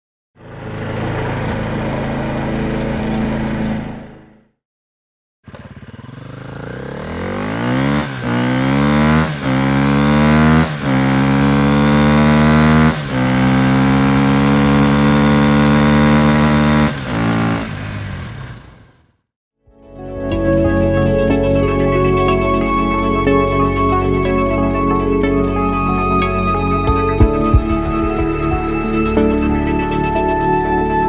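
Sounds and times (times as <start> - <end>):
vehicle engine accelerating: 0.4 - 4.5, 5.5 - 19.1.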